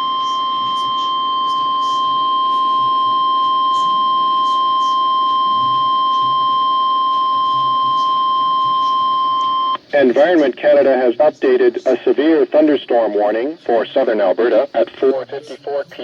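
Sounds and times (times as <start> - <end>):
steady high alarm tone: 0.0 - 9.8.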